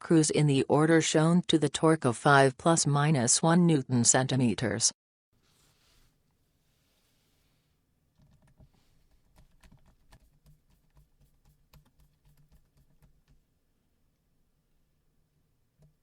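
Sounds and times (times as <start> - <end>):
faint irregular clicking: 8.2 - 13.5.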